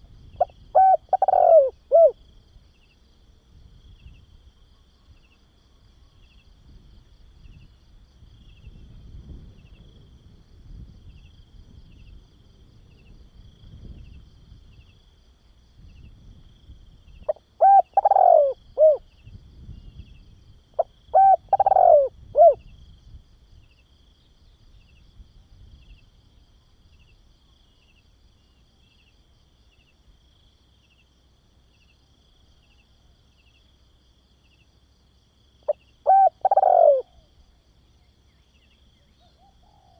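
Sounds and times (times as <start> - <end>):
dove cooing: 0.4 - 2.2, 17.3 - 19.1, 20.8 - 22.6, 35.7 - 37.3, 39.2 - 39.9.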